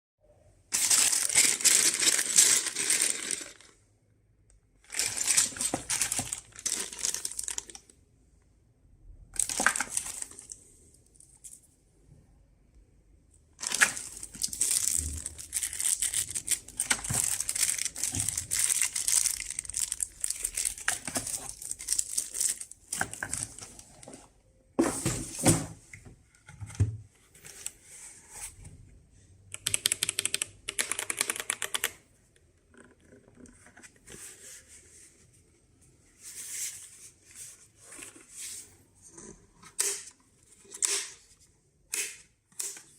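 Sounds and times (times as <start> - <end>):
packaging crinkling and rustling: 0.8 - 3.8, 4.8 - 8.0, 9.4 - 10.6, 13.6 - 24.1.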